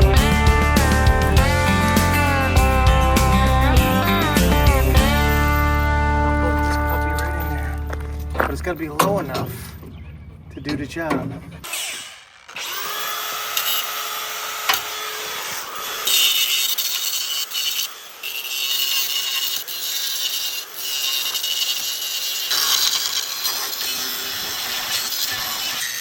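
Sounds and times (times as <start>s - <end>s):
tool grinding on metal: 11.5s - 26.0s
drill whine: 11.6s - 26.0s.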